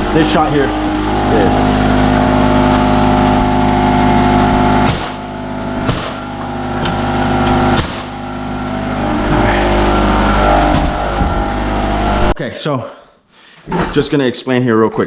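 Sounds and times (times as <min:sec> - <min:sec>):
motor humming: 0:00.0 - 0:12.4
sharp knocks: 0:02.6 - 0:03.5, 0:04.4 - 0:08.2, 0:10.7 - 0:11.5.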